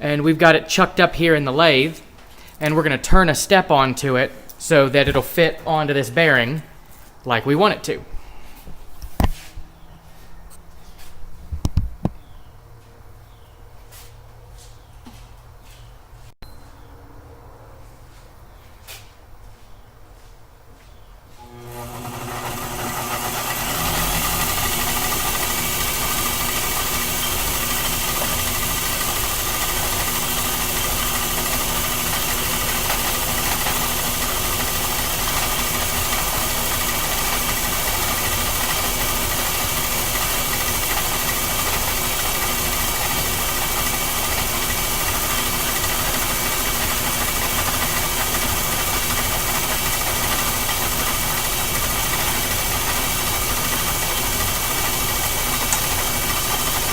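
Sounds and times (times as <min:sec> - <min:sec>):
metal lathe whining: 0:21.4 - 0:56.9.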